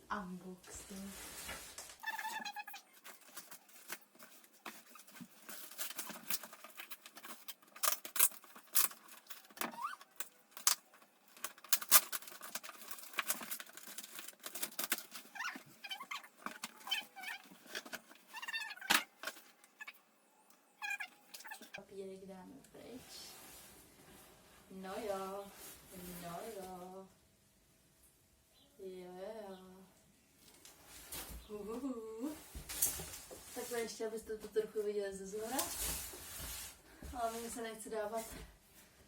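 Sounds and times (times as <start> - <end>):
packaging paper crinkling: 1.5 - 20.0.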